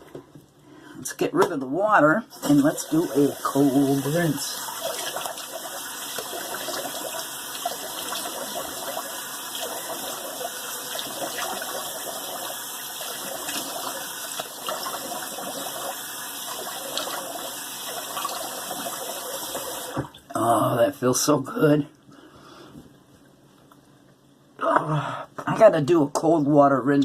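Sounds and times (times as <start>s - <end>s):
tap water running into sink: 2.3s - 20.3s.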